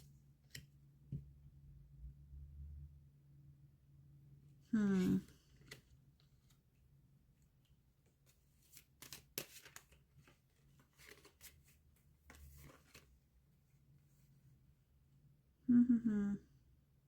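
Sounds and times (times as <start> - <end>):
cards rustling and shuffling: 8.1 - 13.2.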